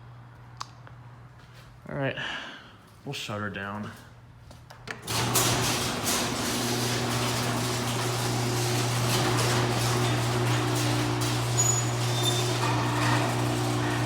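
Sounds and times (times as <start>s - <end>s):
garage door opener click: 4.9s - 14.0s
motor hum: 5.0s - 14.0s.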